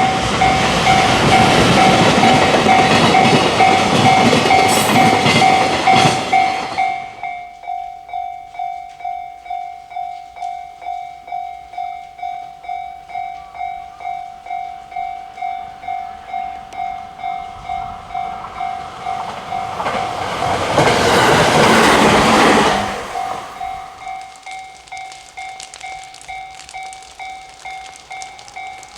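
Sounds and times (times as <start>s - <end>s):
train passing: 0.0s - 9.0s, 11.2s - 28.9s
level crossing bell ringing: 0.0s - 20.2s.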